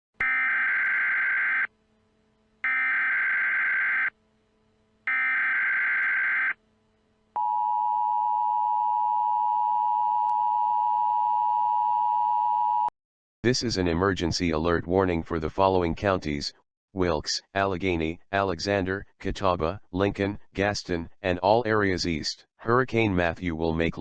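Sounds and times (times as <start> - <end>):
buzzy data bursts: 0.2 - 1.7, 2.6 - 4.2
two-tone alert signal: 0.2 - 1.7.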